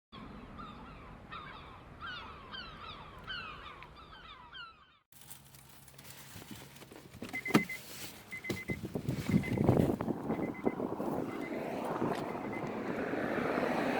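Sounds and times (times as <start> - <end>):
high beeps: 7.4 - 9.8, 10.4 - 12.8.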